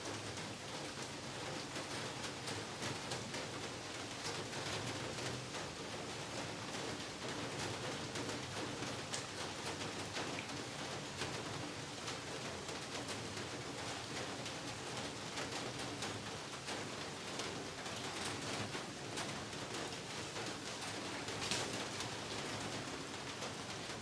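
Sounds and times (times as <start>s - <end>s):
raindrops striking close by: 0.1s - 24.0s
heavy rain falling: 4.2s - 24.0s.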